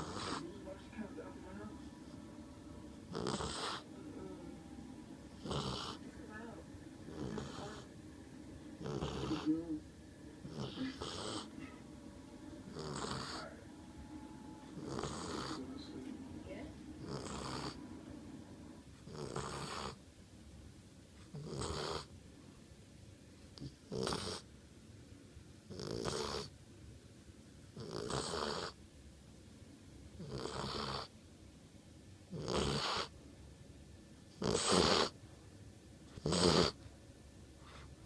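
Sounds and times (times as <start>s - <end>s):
dog snoring: 0.0s - 0.8s, 3.0s - 4.4s, 5.3s - 8.0s, 8.8s - 9.8s, 10.4s - 11.8s, 12.6s - 13.7s, 14.6s - 16.1s, 17.0s - 17.9s, 18.9s - 20.0s, 21.2s - 22.1s, 23.6s - 24.5s, 25.7s - 26.5s, 27.7s - 28.8s, 30.2s - 31.1s, 32.3s - 33.2s, 34.3s - 35.2s, 36.1s - 36.8s.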